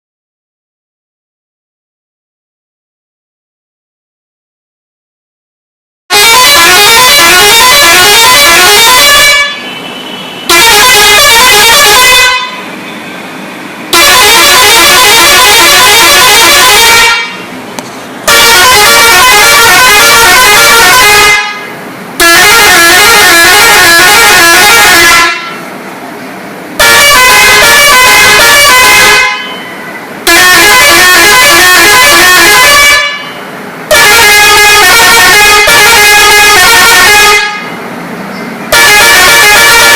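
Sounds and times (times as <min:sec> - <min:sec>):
musical horn playing short tunes: 0:06.1 - 0:06.9.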